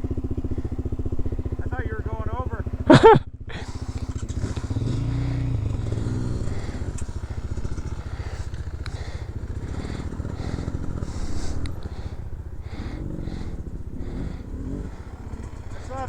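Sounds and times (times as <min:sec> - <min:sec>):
dirt bike engine revving: 0:00.0 - 0:16.0
sharp clicks: 0:05.9 - 0:16.0.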